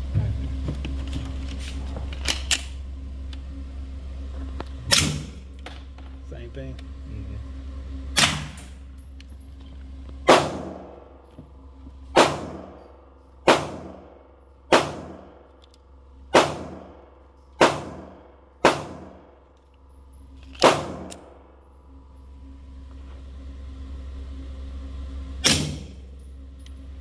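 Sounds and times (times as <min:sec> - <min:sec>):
suppressed gunshots: 0:04.9 - 0:05.5, 0:08.2 - 0:08.8, 0:10.2 - 0:11.1, 0:12.2 - 0:14.1, 0:14.7 - 0:15.5, 0:16.3 - 0:17.0, 0:17.6 - 0:19.3, 0:20.5 - 0:21.4, 0:25.4 - 0:26.0.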